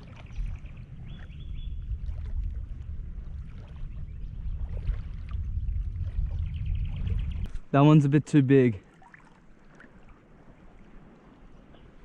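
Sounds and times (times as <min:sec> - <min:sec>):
wind on microphone: 0:00.0 - 0:07.8
water rumble: 0:00.0 - 0:12.0.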